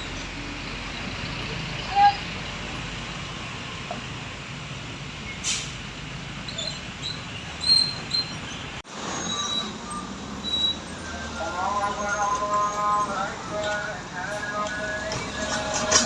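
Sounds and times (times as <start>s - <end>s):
roadside traffic noise: 0.0s - 16.0s
brief hiss: 5.4s - 5.8s
high-pitched squeaks: 6.5s - 13.9s.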